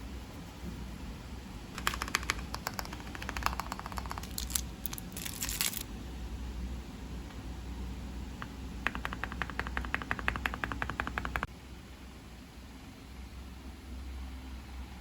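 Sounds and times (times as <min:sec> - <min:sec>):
keycaps clicking onto switches: 0:01.8 - 0:05.0, 0:08.4 - 0:11.5
keycaps rattling: 0:01.8 - 0:05.9, 0:08.8 - 0:11.4.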